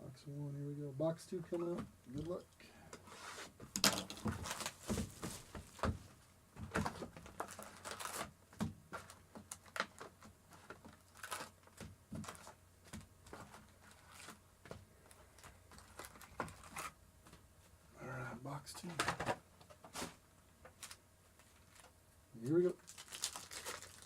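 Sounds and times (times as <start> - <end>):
foil packs crinkling: 3.8 - 5.9, 6.7 - 14.4, 15.0 - 17.0, 20.7 - 21.9, 22.5 - 24.0.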